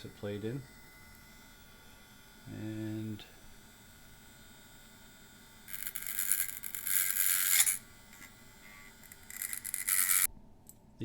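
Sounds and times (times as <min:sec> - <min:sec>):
high-pitched scraping: 0:05.7 - 0:10.3.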